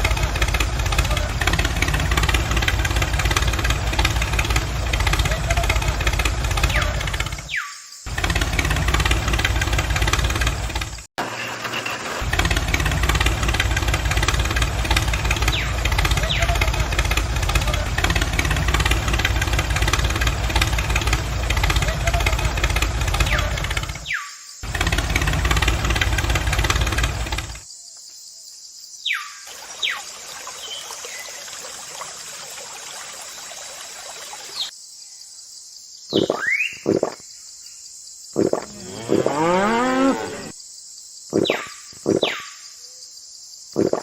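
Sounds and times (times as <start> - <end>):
small motor running: 12.2 - 24.0.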